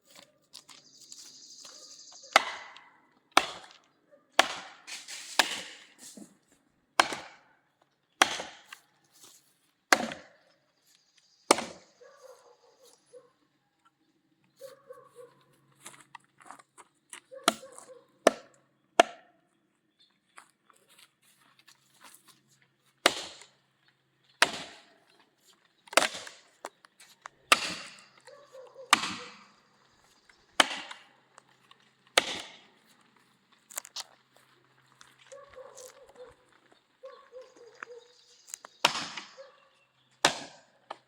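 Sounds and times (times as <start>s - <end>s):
hammer striking wedges into log: 2.3s - 2.8s, 3.4s - 3.8s, 4.4s - 5.9s, 7.0s - 7.4s, 8.2s - 8.8s, 9.9s - 10.4s, 11.5s - 11.9s, 18.3s - 19.3s, 23.0s - 23.5s, 24.4s - 24.9s, 25.9s - 26.5s, 27.5s - 28.2s, 28.9s - 29.5s, 30.6s - 31.1s, 32.2s - 32.6s, 38.8s - 39.4s, 40.2s - 41.0s.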